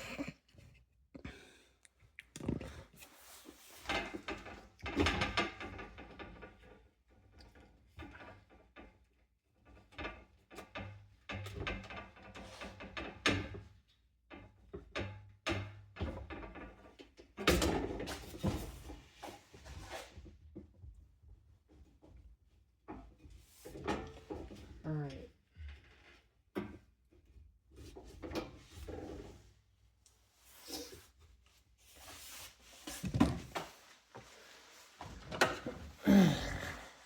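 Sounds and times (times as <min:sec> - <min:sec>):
fan parts knocking and clattering: 0:03.8 - 0:08.8, 0:14.3 - 0:18.9.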